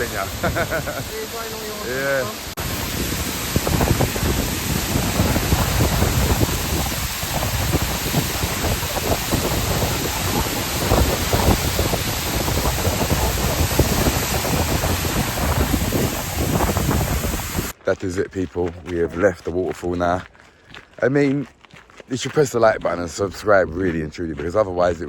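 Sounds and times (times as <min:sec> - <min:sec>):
waterfall rushing: 0:00.0 - 0:17.8
wind buffeting microphone: 0:00.0 - 0:17.8.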